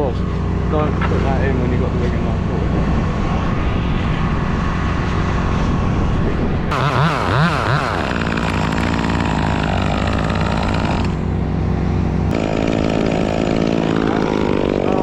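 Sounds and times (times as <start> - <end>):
chainsaw running: 6.7 - 15.0.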